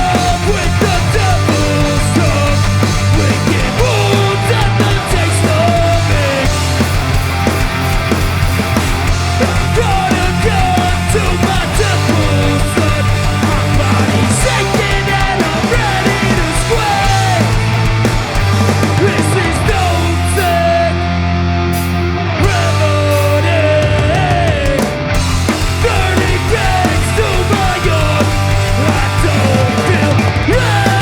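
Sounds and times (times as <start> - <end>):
punk band playing live: 0.0 - 31.0.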